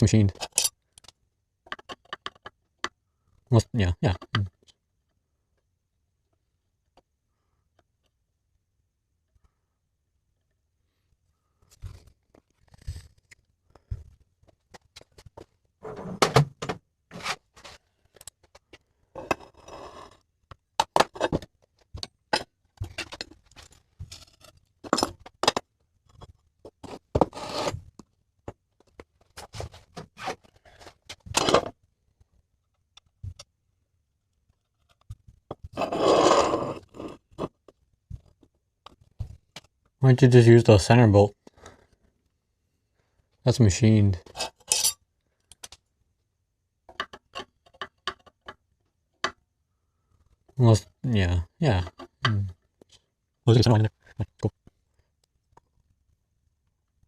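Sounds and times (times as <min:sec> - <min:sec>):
tools knocking and clicking: 0:00.4 - 0:03.0, 0:46.9 - 0:48.6
long scrape on workbench: 0:27.2 - 0:27.8, 0:35.8 - 0:37.1.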